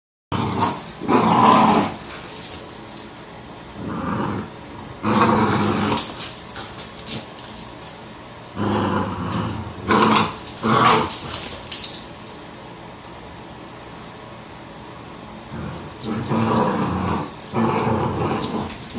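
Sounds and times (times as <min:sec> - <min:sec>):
puppies growling in play: 0:00.3 - 0:07.9, 0:08.5 - 0:12.4, 0:15.4 - 0:18.9.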